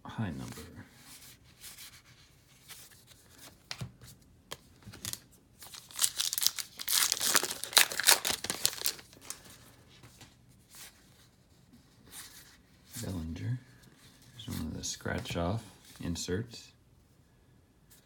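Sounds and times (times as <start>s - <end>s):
wrapper tearing and crinkling: 4.9s - 9.5s.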